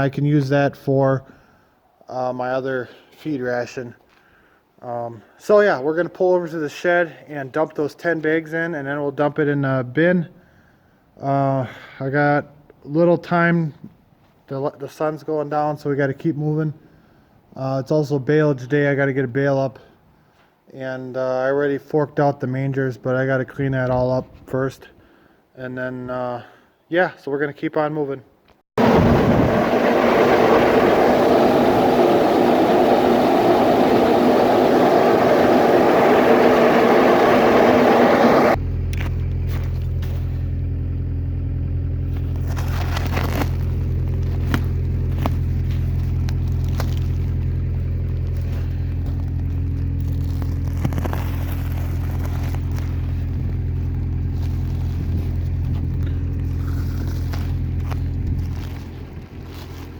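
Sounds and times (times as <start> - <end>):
loud rushing mechanical noise: 28.8 - 38.6
tractor diesel engine running: 28.8 - 59.9.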